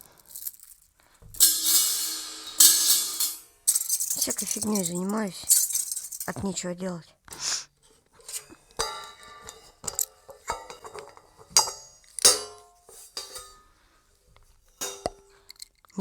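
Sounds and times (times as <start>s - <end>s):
metal drum hardware clinking: 0.3s - 6.4s, 8.2s - 13.7s.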